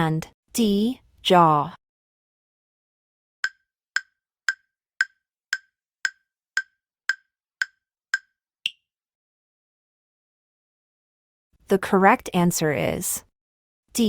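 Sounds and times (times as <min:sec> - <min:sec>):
wood-block-like timer ticks: 0:03.4 - 0:08.8.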